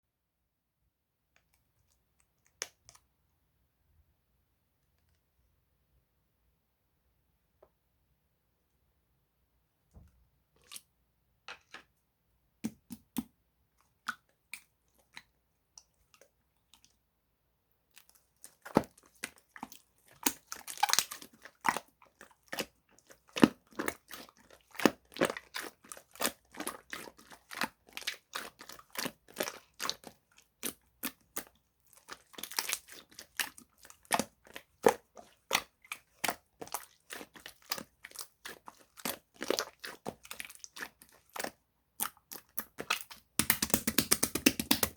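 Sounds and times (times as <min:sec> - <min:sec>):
slime kneaded with sticky clicks: 0:12.6 - 0:15.2, 0:32.1 - 0:44.9.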